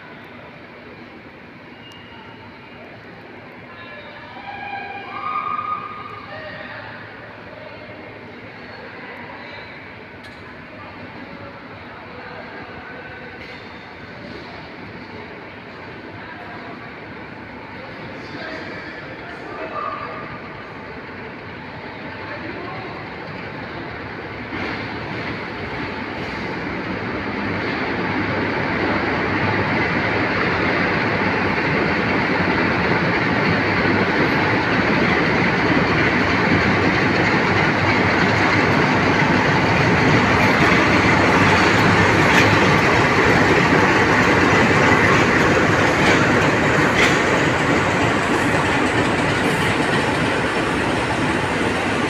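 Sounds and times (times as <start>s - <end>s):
train rolling: 0.0s - 52.0s
wheels clicking over rail joints: 36.2s - 52.0s.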